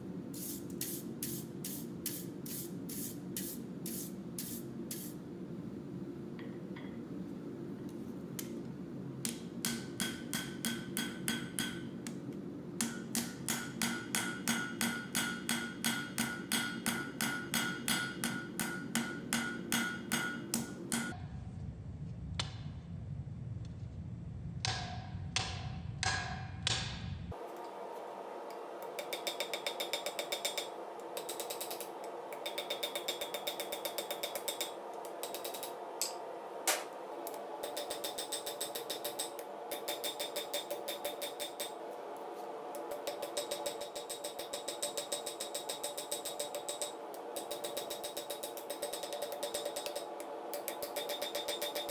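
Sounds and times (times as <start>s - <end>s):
hammer striking steel on anvil: 9.3s - 12.2s, 12.8s - 21.2s, 28.5s - 41.8s, 42.8s - 51.9s.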